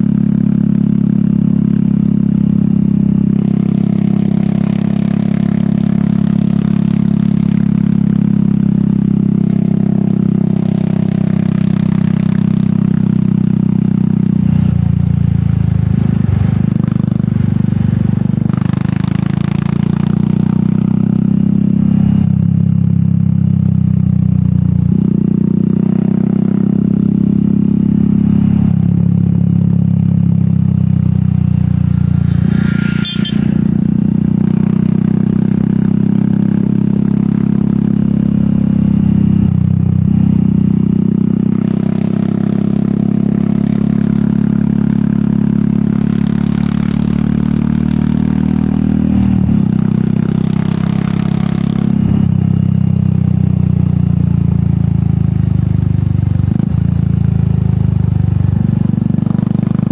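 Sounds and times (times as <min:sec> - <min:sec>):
motorcycle engine running: 0:00.0 - 0:59.9.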